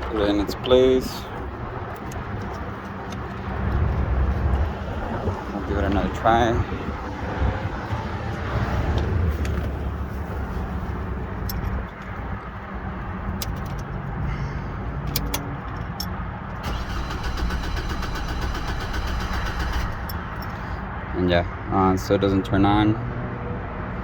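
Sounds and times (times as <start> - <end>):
engine cranking without starting: 15.1 - 20.8.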